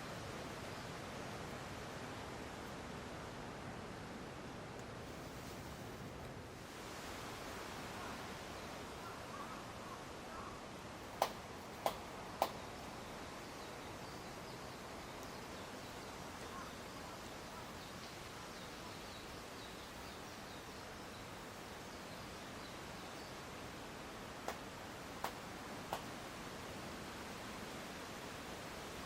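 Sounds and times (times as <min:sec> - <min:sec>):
wind rustling leafy trees: 0:00.0 - 0:29.0
sharp clicks: 0:11.2 - 0:12.6.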